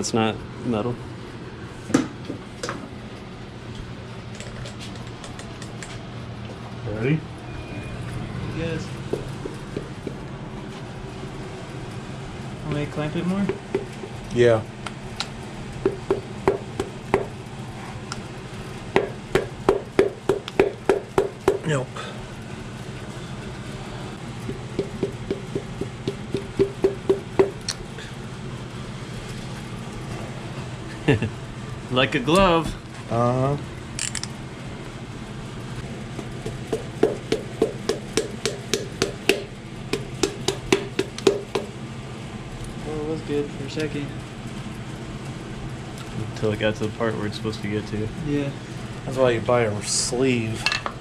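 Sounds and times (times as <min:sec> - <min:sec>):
hammer handle tapping piston: 0:19.0 - 0:21.7, 0:24.4 - 0:27.7, 0:36.2 - 0:41.7.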